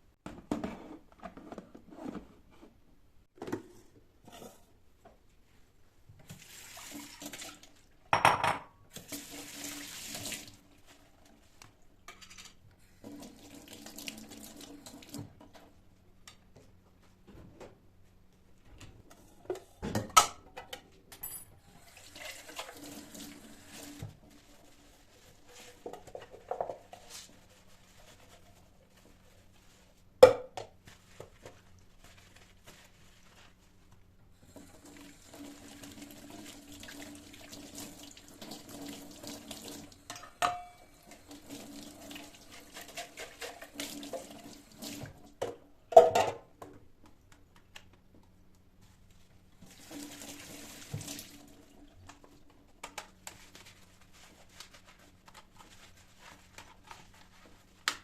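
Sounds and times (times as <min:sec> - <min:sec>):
knocks and clinks at sink: 0:08.2 - 0:08.8, 0:40.1 - 0:40.8
tap water running into sink: 0:49.6 - 0:51.6.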